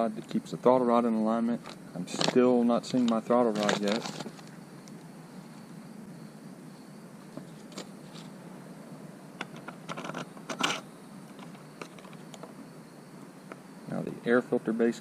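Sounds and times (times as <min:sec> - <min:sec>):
steady low hum: 0:00.0 - 0:15.0
small parts clicking and scraping: 0:01.6 - 0:04.6, 0:09.4 - 0:12.5.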